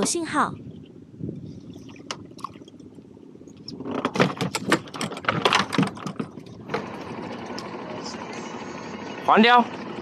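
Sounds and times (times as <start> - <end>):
rapid clicks and rattles: 3.6 - 7.8.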